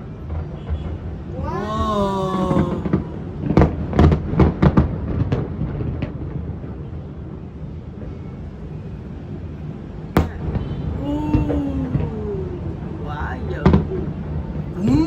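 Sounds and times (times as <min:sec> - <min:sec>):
fireworks bangs: 0:01.8 - 0:06.3, 0:10.2 - 0:12.1.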